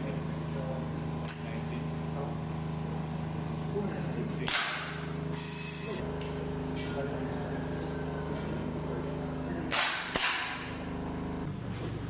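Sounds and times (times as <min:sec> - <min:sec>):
low hum: 0:00.0 - 0:12.0
air rifle shots: 0:09.7 - 0:10.7.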